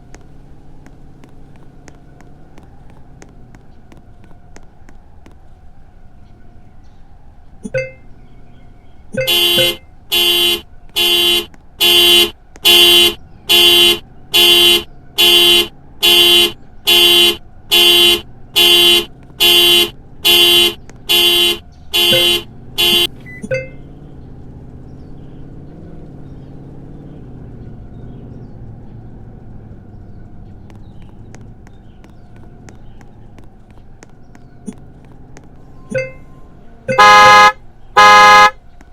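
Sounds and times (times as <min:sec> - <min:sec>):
car horn honks: 0:09.2 - 0:23.8, 0:35.9 - 0:38.6.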